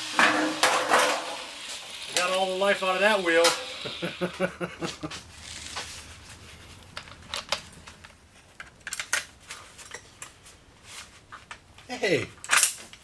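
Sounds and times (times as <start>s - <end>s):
metal tools clinking: 6.9s - 10.5s.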